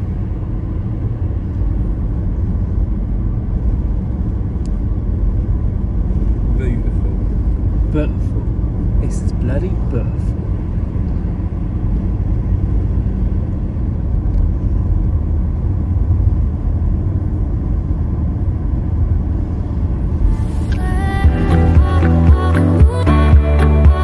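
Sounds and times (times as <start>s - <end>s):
car cabin road and engine rumble: 0.0s - 24.0s
music: 20.5s - 24.0s.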